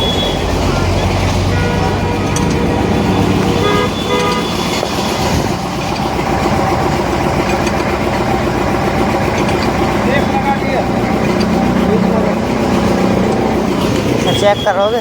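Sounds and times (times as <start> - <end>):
short horn-like tones: 0.0 - 5.3
engine running: 0.0 - 15.0.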